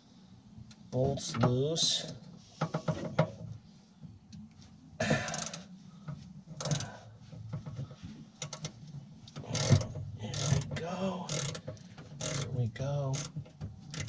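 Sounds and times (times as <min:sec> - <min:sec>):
hand tools clicking on metal: 0:09.4 - 0:14.0.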